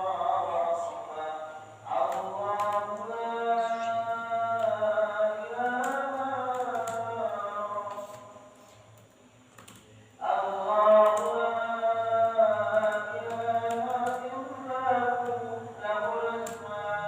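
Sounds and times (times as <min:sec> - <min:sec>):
person singing long held notes: 0:00.0 - 0:08.8, 0:09.7 - 0:17.0
computer keyboard key clicks: 0:05.6 - 0:07.0, 0:09.6 - 0:09.9, 0:11.0 - 0:11.4, 0:12.8 - 0:14.3.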